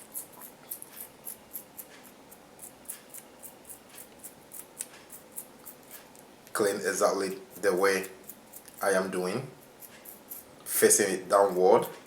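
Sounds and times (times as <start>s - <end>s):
toothbrush bristles scrubbing: 0.0s - 6.1s, 7.5s - 10.5s.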